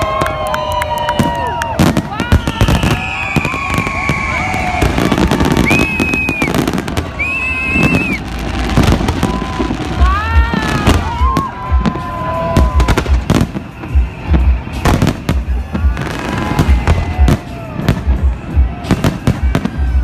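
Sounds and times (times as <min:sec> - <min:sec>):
crackling firework bangs: 0:00.0 - 0:20.0
whistling fireworks: 0:00.0 - 0:20.0
deep firework booms: 0:01.2 - 0:20.0.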